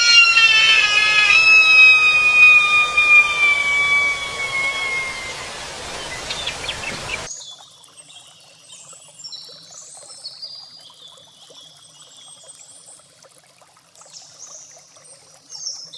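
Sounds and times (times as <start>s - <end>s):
loud hiss with whistle tones: 0.0s - 7.3s
small birds chirping: 0.0s - 7.3s.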